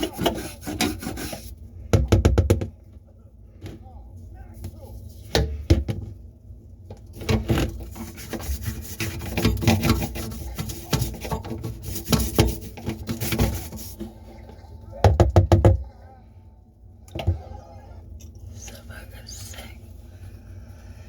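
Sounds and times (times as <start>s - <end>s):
plastic scraping rubs: 0.0s - 1.6s, 7.2s - 14.5s
plastic pipes knocking: 0.0s - 2.8s, 7.2s - 14.1s, 15.0s - 15.8s.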